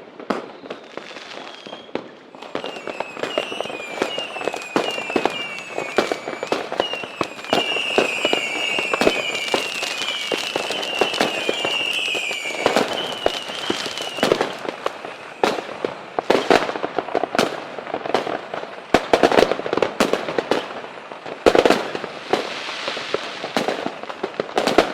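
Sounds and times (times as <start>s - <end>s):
fireworks crackling: 0.0s - 24.9s
fireworks popping and banging: 0.0s - 24.9s
whistling rockets: 0.3s - 16.7s.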